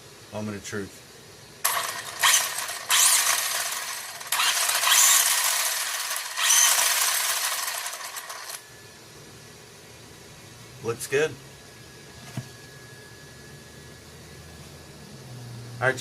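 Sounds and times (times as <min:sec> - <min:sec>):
gears rattling: 0:01.6 - 0:08.6
toy truck electric motor whine: 0:01.6 - 0:08.7.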